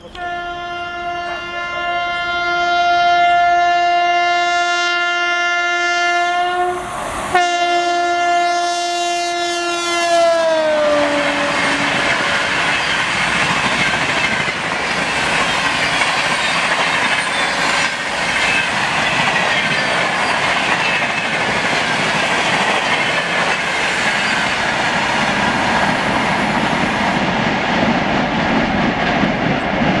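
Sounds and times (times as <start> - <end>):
train horn: 0.0 - 12.9
train wheels rattling over rail joints: 11.3 - 30.0.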